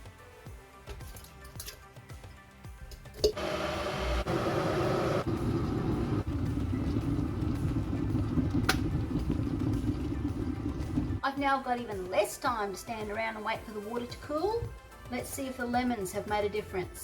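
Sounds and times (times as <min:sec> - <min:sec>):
water boiling in kettle: 0:03.4 - 0:11.2.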